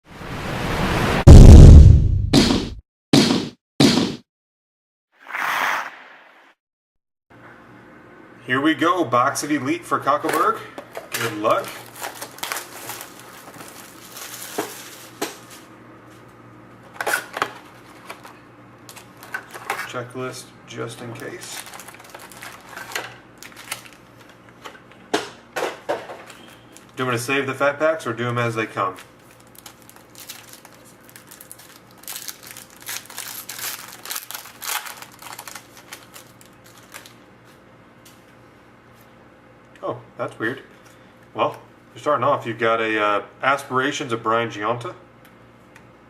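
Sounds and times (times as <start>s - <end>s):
packaging rustling and tearing: 11.0s - 15.7s, 16.9s - 19.9s, 21.2s - 24.5s, 29.0s - 37.2s.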